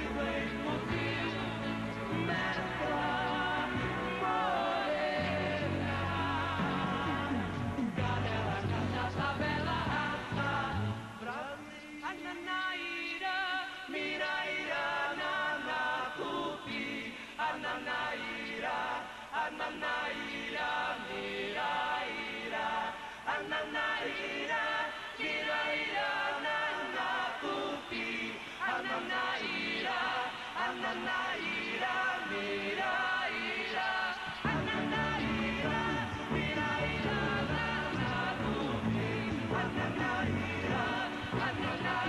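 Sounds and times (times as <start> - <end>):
several voices singing: 0.0 - 42.0.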